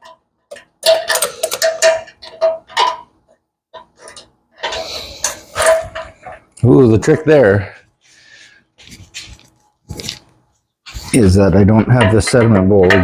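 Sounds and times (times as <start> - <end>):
small metal parts clicking: 0.0 - 3.0.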